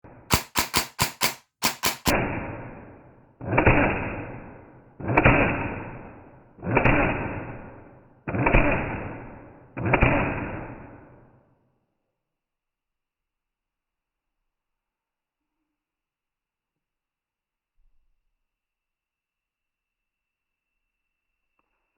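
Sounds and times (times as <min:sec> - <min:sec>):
slowed shots low whirr: 0:00.1 - 0:11.4
rapid mechanical clicks: 0:00.3 - 0:02.2.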